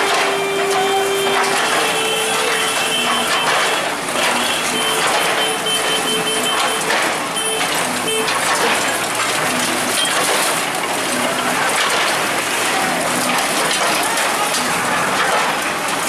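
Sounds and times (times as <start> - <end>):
crushed masonry crackling and clattering: 0.0 - 16.0.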